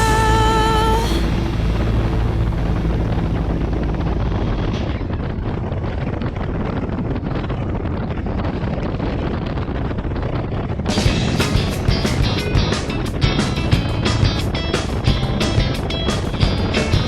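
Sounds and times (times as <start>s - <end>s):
music: 0.0s - 3.8s, 11.0s - 17.0s
motorcycle engine: 0.0s - 5.6s, 10.9s - 17.0s
wind rushing over microphone: 0.0s - 17.0s.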